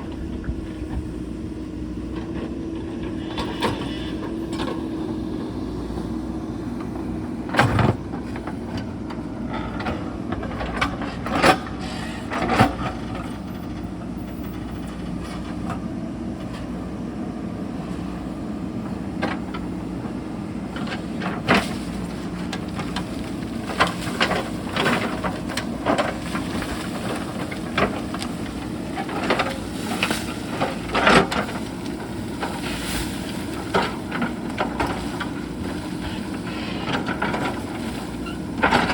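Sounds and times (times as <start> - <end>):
diesel engine running under load: 0.0 - 38.9
bucket striking and dragging rocks: 20.9 - 38.9.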